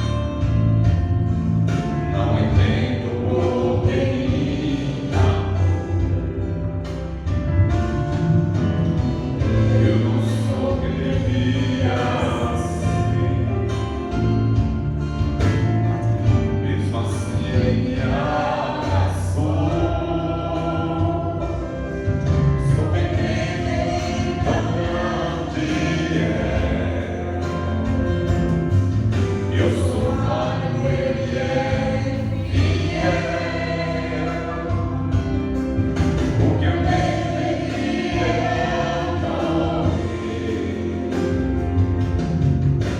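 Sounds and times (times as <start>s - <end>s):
band playing gospel music: 0.0s - 42.9s
bass line: 0.0s - 42.9s
singing: 1.7s - 6.6s, 9.4s - 13.4s, 16.5s - 21.9s, 22.6s - 28.1s, 29.4s - 35.6s, 36.2s - 41.6s.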